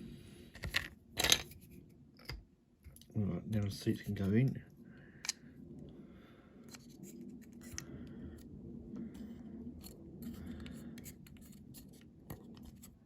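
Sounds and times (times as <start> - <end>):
faint scraping and scratching: 3.4 - 5.5, 6.2 - 13.0.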